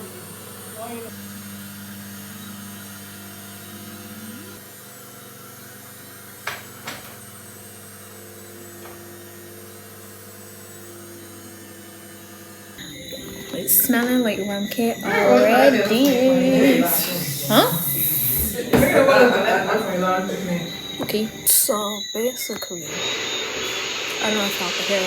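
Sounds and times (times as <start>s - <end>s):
blender motor humming: 0.0s - 25.0s.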